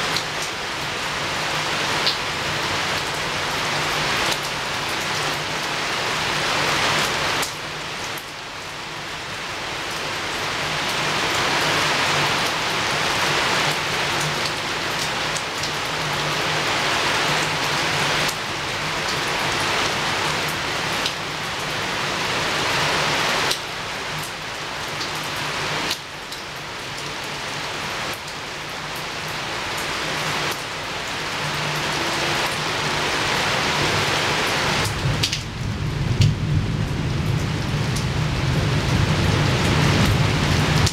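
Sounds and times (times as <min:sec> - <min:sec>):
heavy rain against a window: 0:00.0 - 0:40.9
low rumble of thunder: 0:34.9 - 0:40.9.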